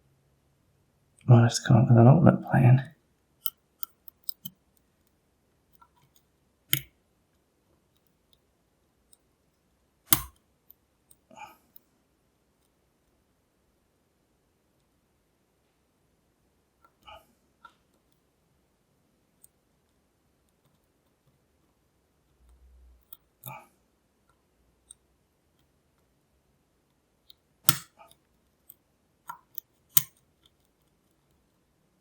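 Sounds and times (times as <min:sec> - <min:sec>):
lock pick clicking: 0:03.4 - 0:04.6, 0:10.1 - 0:10.4, 0:27.7 - 0:27.9, 0:29.3 - 0:30.2.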